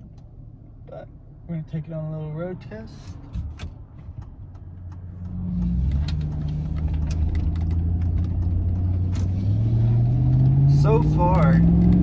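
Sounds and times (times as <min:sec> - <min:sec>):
clicks and rattles in cab: 0:03.1 - 0:09.3
pickup engine accelerating: 0:04.2 - 0:12.0.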